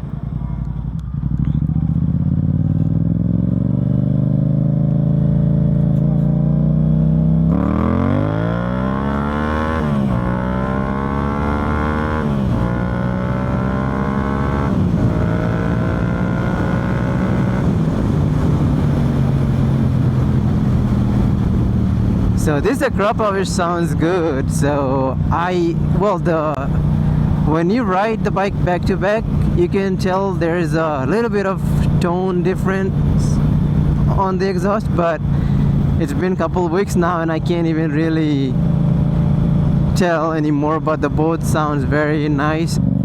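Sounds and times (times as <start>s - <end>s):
motorcycle engine accelerating: 0.0s - 43.0s.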